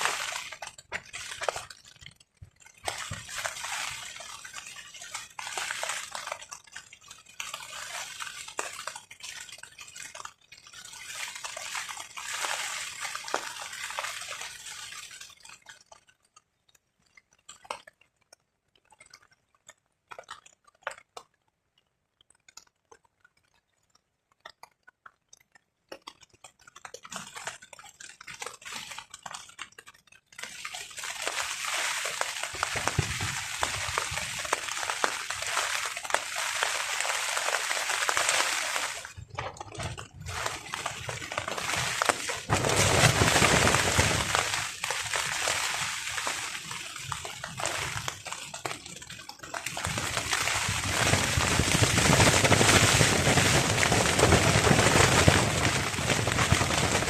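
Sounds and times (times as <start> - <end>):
rain and wind on a tarp: 0.0 - 16.0, 26.8 - 29.6, 30.3 - 57.0
drops tapping on a tarp: 30.4 - 57.0.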